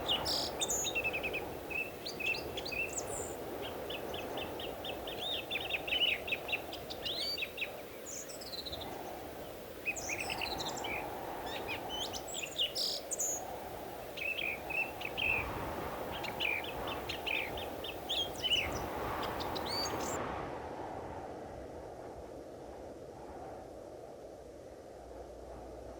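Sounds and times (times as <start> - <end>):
birds chirping and trilling: 0.0 - 20.2
low rushing background noise: 0.0 - 20.2.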